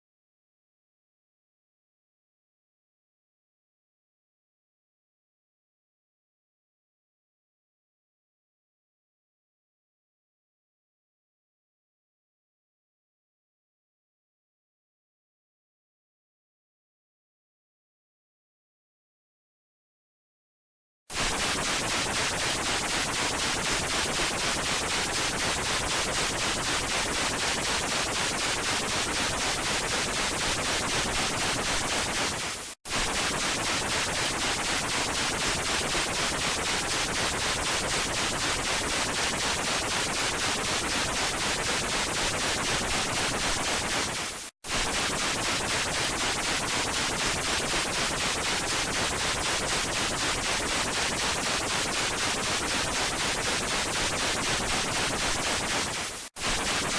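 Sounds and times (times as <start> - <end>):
fluttering broadcast static: 21.1 - 56.9.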